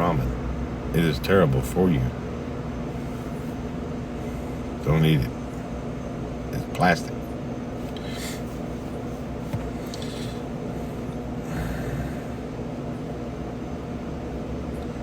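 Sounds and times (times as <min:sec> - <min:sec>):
low hum inside a vehicle: 0:00.0 - 0:15.0
faint breathy hisses: 0:08.0 - 0:08.5, 0:09.9 - 0:10.5.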